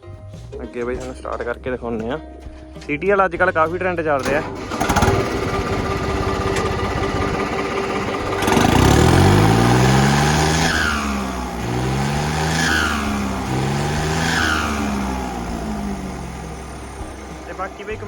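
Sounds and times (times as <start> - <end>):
diesel tractor engine revving: 0.2 - 18.0
high falling turbo whistle: 8.5 - 15.3.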